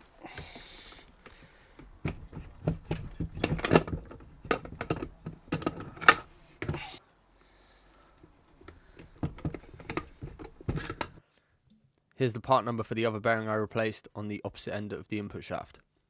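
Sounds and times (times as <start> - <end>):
metal parts knocking and clicking: 1.8 - 6.9, 9.0 - 11.2.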